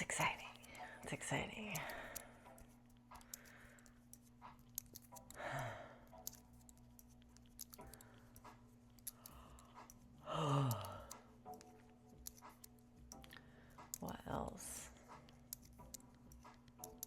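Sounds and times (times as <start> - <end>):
person sighing: 10.2 - 11.2.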